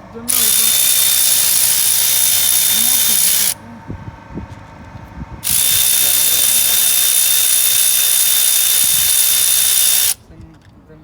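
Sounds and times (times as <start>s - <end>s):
power tool whining: 0.0s - 3.6s, 5.4s - 10.2s
loud hiss: 5.5s - 10.2s.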